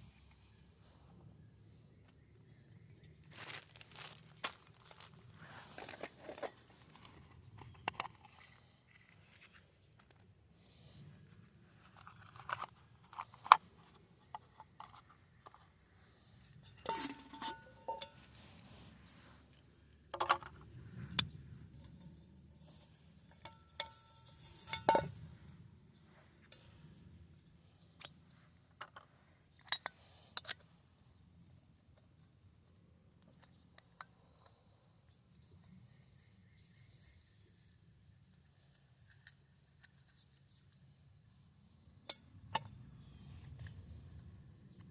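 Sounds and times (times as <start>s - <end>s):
metal cookware clinking and scraping: 16.6s - 18.3s, 23.4s - 25.2s.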